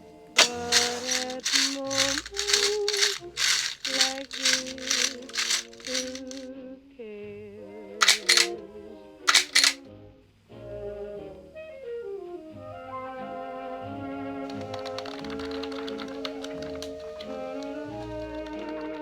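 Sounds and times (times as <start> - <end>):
rhythmic rattling: 0.4 - 6.4, 8.0 - 8.5, 9.3 - 9.8.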